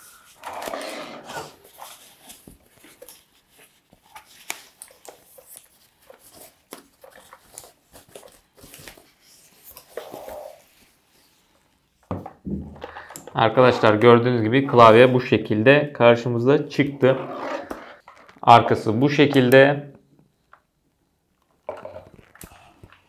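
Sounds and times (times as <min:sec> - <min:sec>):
packaging rustling and scraping: 0:00.0 - 0:11.5.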